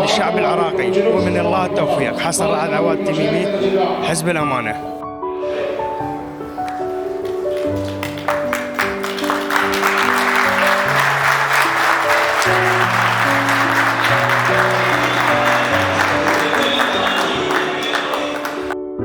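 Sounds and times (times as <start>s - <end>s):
audience applause: 5.6s - 18.8s.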